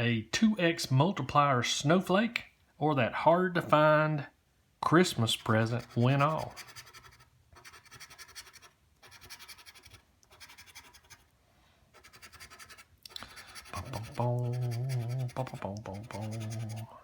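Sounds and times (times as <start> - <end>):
lottery ticket being scratched: 5.3 - 11.3, 12.0 - 16.9.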